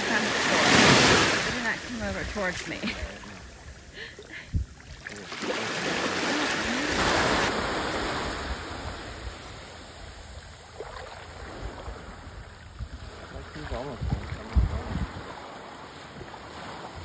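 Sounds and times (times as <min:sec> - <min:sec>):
wave breaking on beach: 0:00.0 - 0:03.6, 0:05.0 - 0:10.0.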